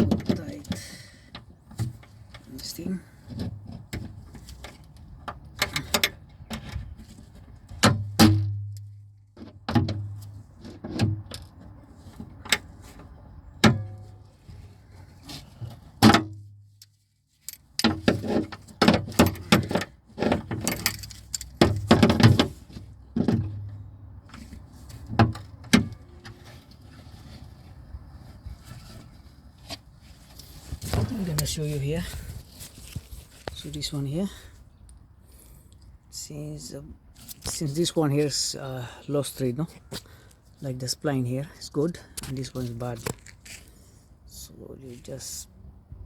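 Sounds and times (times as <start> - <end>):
hand tools clinking against metal: 20.7 - 21.9.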